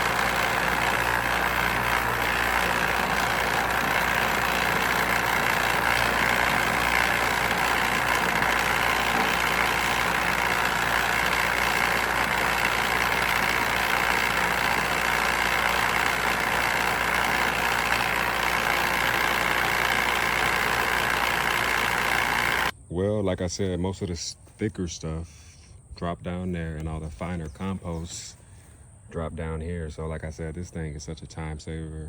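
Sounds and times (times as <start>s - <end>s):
compost sifter mechanical drone: 0.0s - 22.7s.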